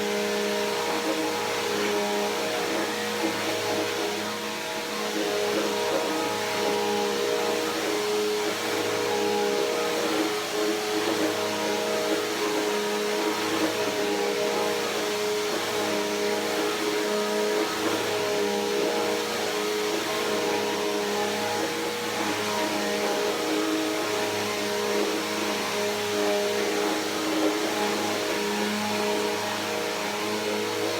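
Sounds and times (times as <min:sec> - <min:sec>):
vacuum cleaner running: 0:00.0 - 0:30.9.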